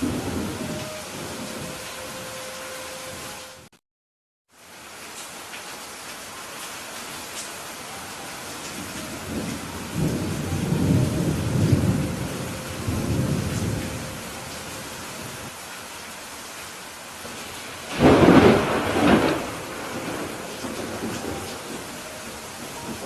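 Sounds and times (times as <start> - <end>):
thunder rumbling and cracking: 0.0 - 1.8, 8.8 - 14.4, 17.3 - 23.0
steady rain: 0.0 - 3.8, 4.5 - 23.0.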